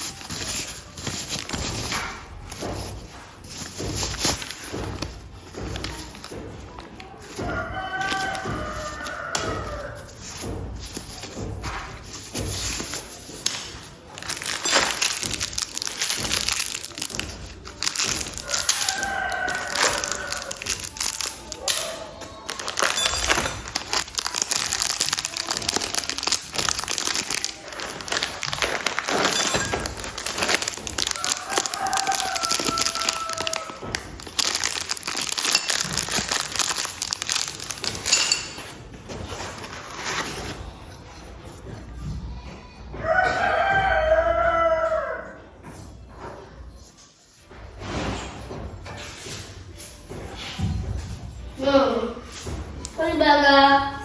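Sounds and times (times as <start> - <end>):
rasping clatter of work noise: 0.0 - 53.2
rooster crowing: 7.4 - 10.1, 18.4 - 20.7, 31.1 - 33.9, 43.0 - 45.4.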